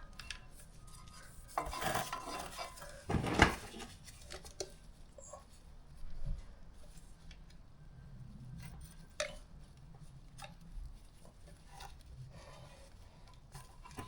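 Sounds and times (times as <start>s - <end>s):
light clicks and rustles: 0.1s - 14.0s.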